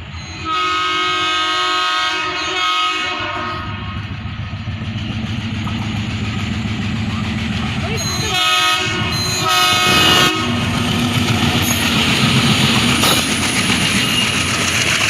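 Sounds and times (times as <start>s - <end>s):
rolling train wheels: 0.0s - 15.0s
locomotive horn blasts: 0.4s - 4.0s, 8.0s - 10.8s
diesel engine drone: 3.4s - 15.0s.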